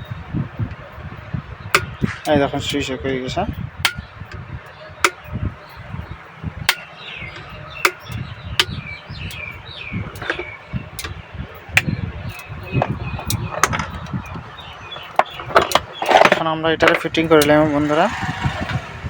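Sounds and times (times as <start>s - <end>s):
birds chirping: 0.0s - 19.0s
kettle parts knocking and clicking: 6.6s - 9.4s, 15.0s - 17.5s.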